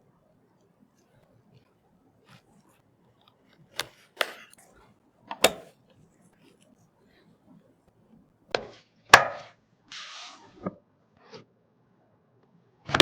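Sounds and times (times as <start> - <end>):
sharp clicks and knocks: 3.8 - 4.7, 5.4 - 5.7.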